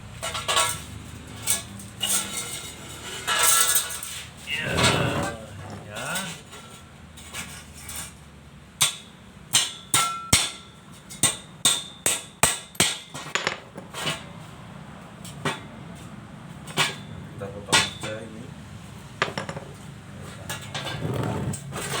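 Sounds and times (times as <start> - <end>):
hammer striking steel: 8.8 - 13.6.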